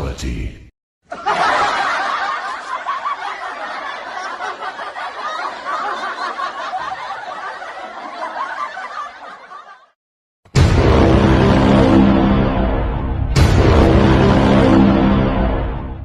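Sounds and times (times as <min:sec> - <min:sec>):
crowd laughing: 0:01.0 - 0:10.0.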